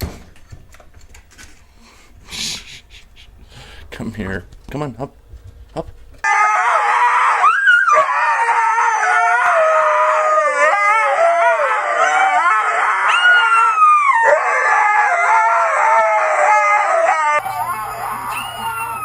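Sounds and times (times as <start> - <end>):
dog howling: 6.2 - 19.0.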